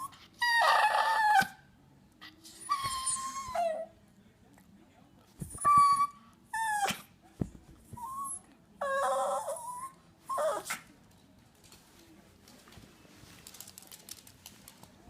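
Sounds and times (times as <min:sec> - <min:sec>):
dog whimpering and whining: 0:00.0 - 0:01.6, 0:02.5 - 0:03.9, 0:05.5 - 0:07.1, 0:07.9 - 0:10.8.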